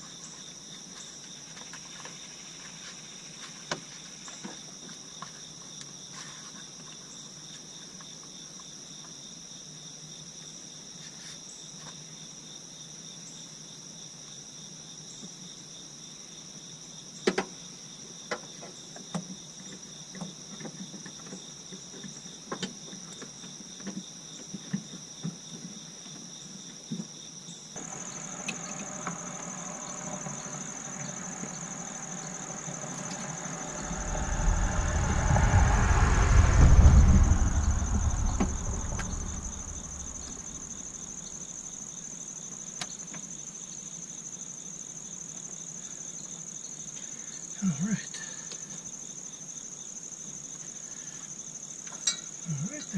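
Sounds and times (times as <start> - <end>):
crickets chirring: 24.9 - 52.9
low rumble: 27.8 - 41.6.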